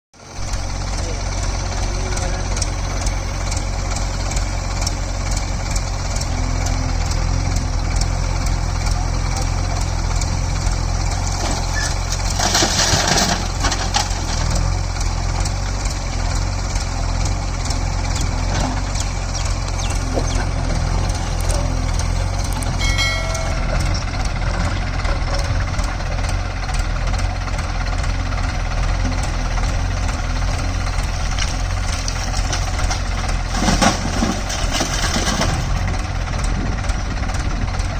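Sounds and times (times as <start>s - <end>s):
tractor diesel engine running: 0.2s - 37.9s.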